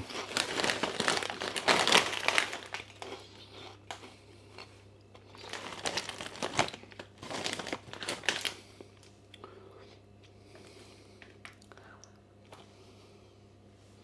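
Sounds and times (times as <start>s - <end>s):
crisp packet crinkling: 0.0s - 4.0s, 5.2s - 9.1s.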